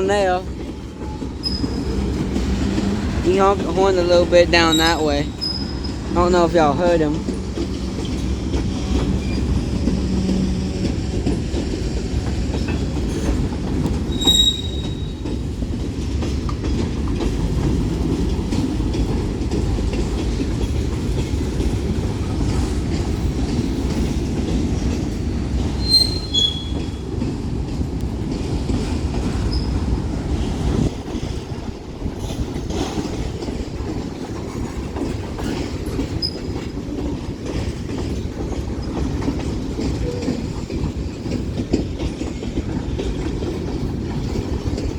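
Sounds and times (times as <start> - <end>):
train wheels rumbling on rails: 0.0 - 44.9
high-pitched wheel squeal: 14.1 - 15.2, 25.8 - 26.9.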